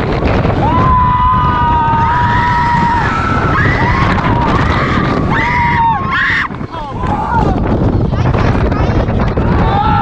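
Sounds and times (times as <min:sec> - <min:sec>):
loud wind: 0:00.0 - 0:10.0
roller coaster train rumble: 0:00.0 - 0:10.0
riders screaming: 0:00.6 - 0:07.6.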